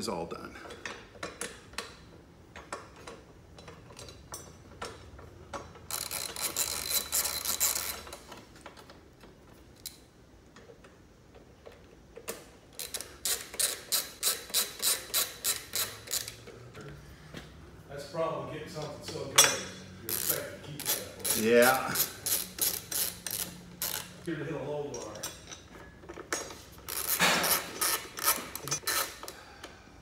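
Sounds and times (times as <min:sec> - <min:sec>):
hand ratchet clicking: 0:01.2 - 0:08.9, 0:11.6 - 0:16.5, 0:20.1 - 0:24.2, 0:26.4 - 0:29.4.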